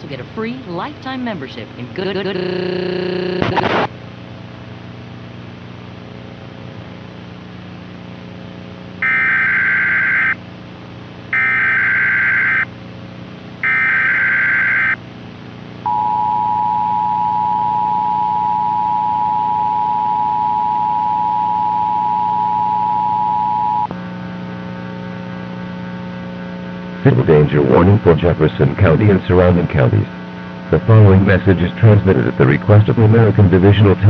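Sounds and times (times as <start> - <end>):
buzzing hum: 0.0 - 34.0
low hum: 0.0 - 34.0
data bursts: 9.0 - 10.4, 11.4 - 12.7, 13.6 - 15.0
two-tone attention signal: 9.0 - 10.4, 11.4 - 12.6.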